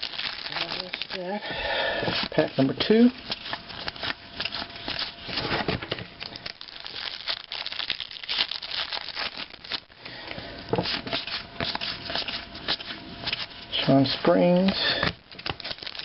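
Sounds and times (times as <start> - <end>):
cards rustling: 0.0 - 1.4, 2.0 - 9.9, 10.7 - 16.0
wrapper tearing and crinkling: 0.0 - 1.4, 2.1 - 10.0, 15.2 - 16.0.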